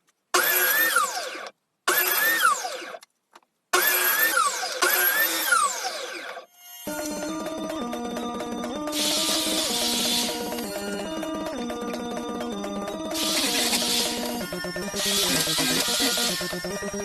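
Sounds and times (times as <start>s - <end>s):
grinder motor whining: 3.8s - 17.0s
rhythmic music: 6.9s - 17.0s.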